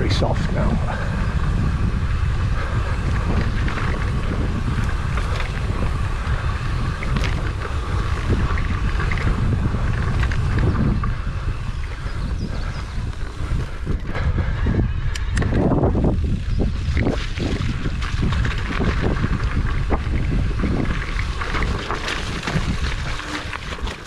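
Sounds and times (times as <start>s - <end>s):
wind buffeting microphone: 0.0s - 24.0s
bike tyres knocking over stones: 3.3s - 11.0s, 16.8s - 24.0s.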